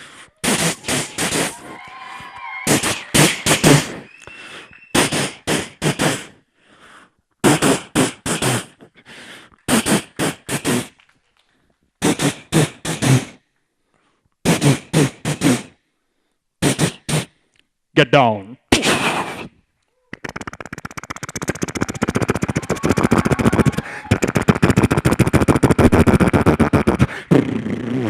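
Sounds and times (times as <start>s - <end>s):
person imitating gunfire: 0.4s - 1.6s
warbling whistle: 0.4s - 5.1s, 21.2s - 25.0s.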